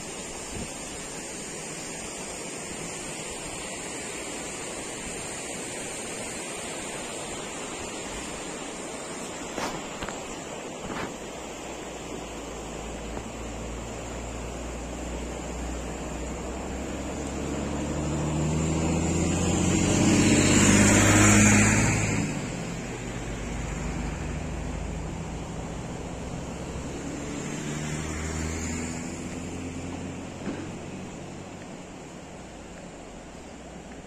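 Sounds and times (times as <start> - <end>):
faint high hiss: 0.0 - 34.0
outdoor rushing noise: 1.9 - 34.0
vehicle approaching rumble: 12.2 - 34.0.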